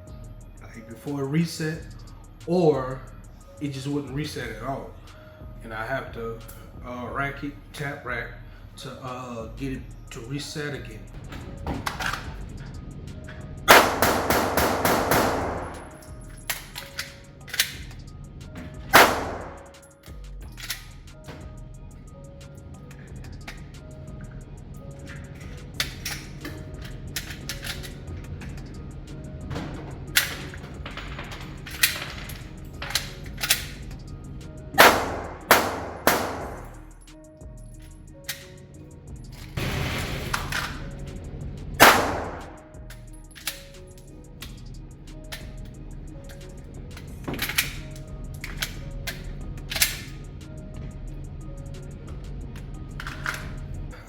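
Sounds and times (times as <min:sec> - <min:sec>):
pistol shots: 0:13.7 - 0:16.1, 0:18.9 - 0:19.8, 0:34.8 - 0:36.8, 0:41.8 - 0:42.7.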